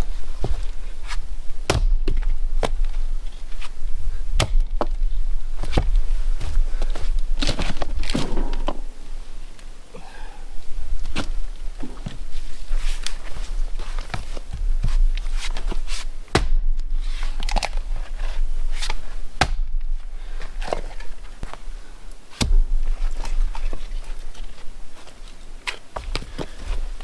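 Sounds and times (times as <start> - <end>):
wood knocking and crunching: 0.0 - 9.8, 10.9 - 21.7, 22.3 - 27.0
axe blows splitting wood: 1.6 - 2.8, 4.4 - 4.8, 19.4 - 19.7, 22.4 - 22.8.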